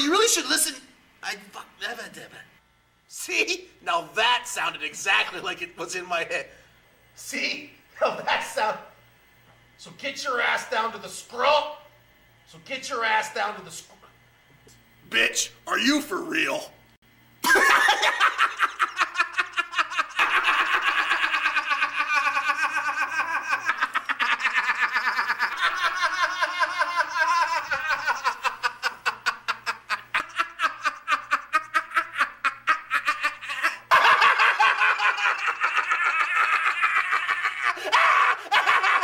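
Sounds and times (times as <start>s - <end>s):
person laughing hard: 17.4s - 39.0s.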